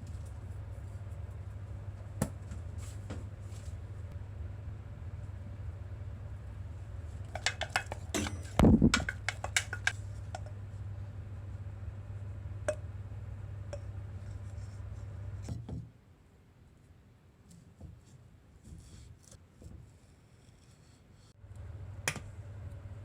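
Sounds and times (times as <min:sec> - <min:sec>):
low steady hum: 0:00.0 - 0:15.6, 0:21.4 - 0:23.0
utensils clinking against dishes: 0:07.3 - 0:10.0.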